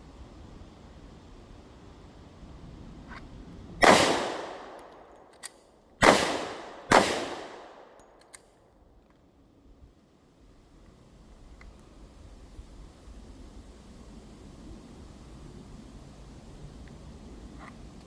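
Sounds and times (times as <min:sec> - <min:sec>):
handgun shots with echo: 0:03.8 - 0:08.4
faint small clicks: 0:10.8 - 0:11.9.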